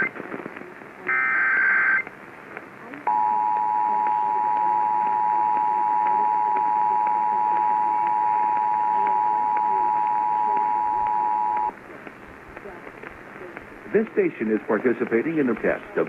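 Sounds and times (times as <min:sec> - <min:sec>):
faint radio hiss: 0:00.0 - 0:16.0
scattered clicks: 0:01.6 - 0:16.0
two-tone alarm signal: 0:03.1 - 0:11.7.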